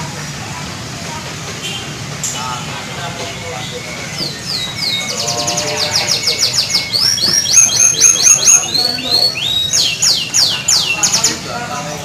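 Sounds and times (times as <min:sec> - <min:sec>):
canary singing: 0:02.4 - 0:12.0.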